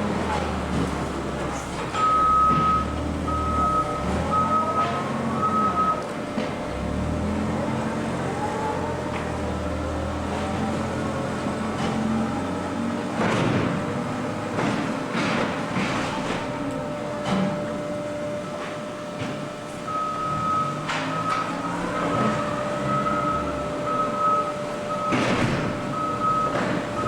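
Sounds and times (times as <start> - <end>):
high backup alarm beeps: 2.0 - 6.0, 19.9 - 27.0.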